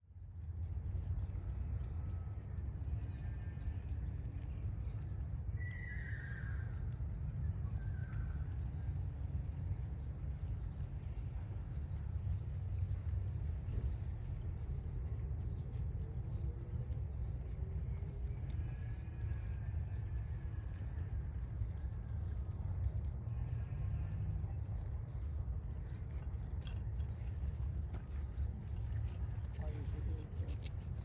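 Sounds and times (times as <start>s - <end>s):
steady low rumble: 0.0s - 5.6s, 6.5s - 31.0s.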